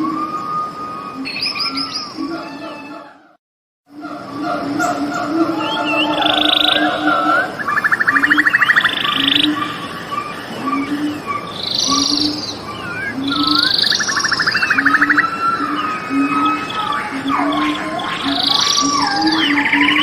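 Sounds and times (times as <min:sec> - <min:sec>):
birds chirping and whistling: 0:00.0 - 0:03.3, 0:04.0 - 0:20.0
frog low call: 0:03.9 - 0:20.0
frog buzzing trills: 0:04.8 - 0:20.0.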